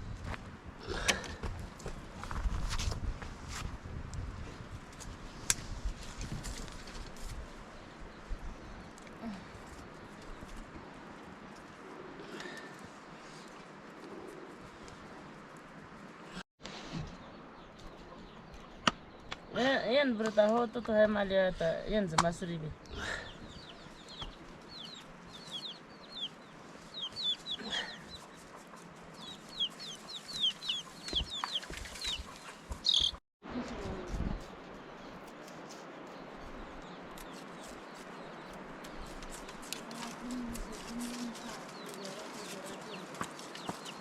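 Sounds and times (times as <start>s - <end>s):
chickens peeping: 22.9s - 33.2s.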